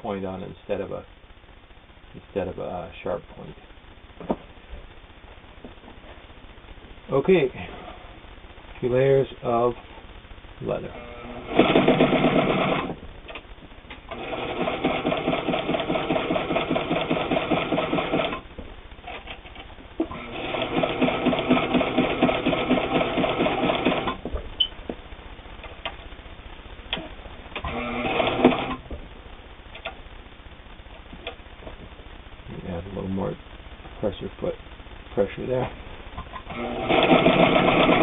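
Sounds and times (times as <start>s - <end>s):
sewing machine stitching leather: 11.4s - 13.0s, 14.1s - 18.4s, 20.0s - 24.2s, 27.6s - 28.8s, 36.5s - 38.0s.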